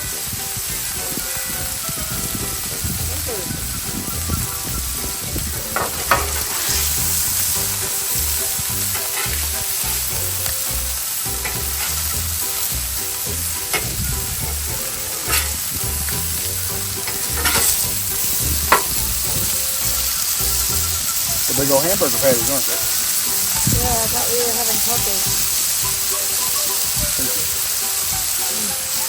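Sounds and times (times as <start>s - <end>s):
meat sizzling on a griddle: 0.0s - 29.0s
metal spatula scraping steel: 0.0s - 29.0s.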